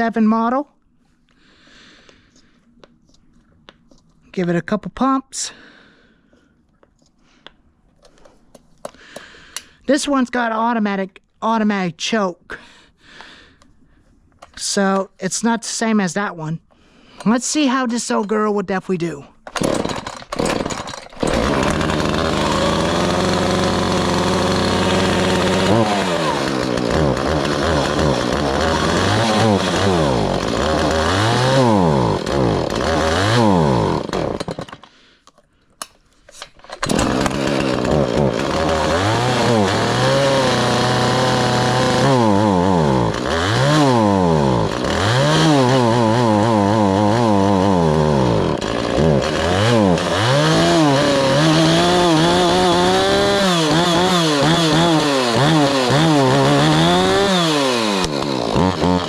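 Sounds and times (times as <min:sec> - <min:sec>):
chainsaw engine revving: 0:19.5 - 0:34.9, 0:36.7 - 0:59.0.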